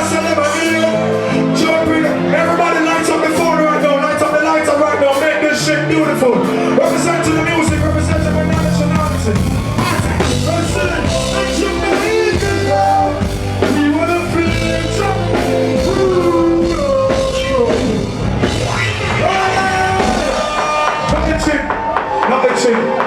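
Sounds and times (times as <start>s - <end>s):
concert music through a pa: 0.0s - 23.0s.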